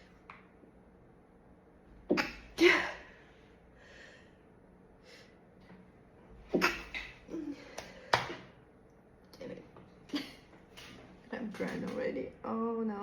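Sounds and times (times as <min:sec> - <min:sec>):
woman stifling sneezes: 0:02.1 - 0:03.1.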